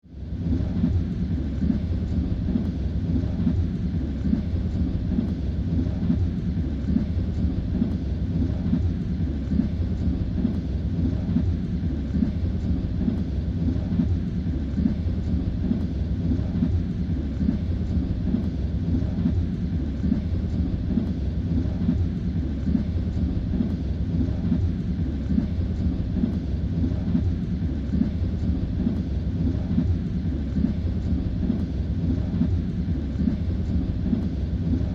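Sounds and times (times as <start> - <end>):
train low rumble: 0.1 - 34.9.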